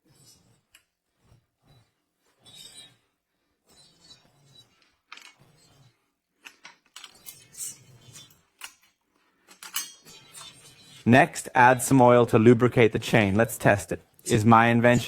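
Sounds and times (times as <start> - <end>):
metal parts and tools clinking: 3.8 - 11.1.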